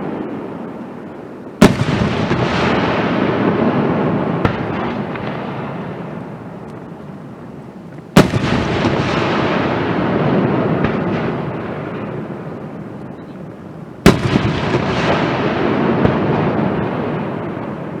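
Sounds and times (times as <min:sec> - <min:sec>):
fireworks rumble and crackle: 0:00.0 - 0:18.0
fireworks bang: 0:01.6 - 0:06.8, 0:08.2 - 0:12.2, 0:14.0 - 0:18.0.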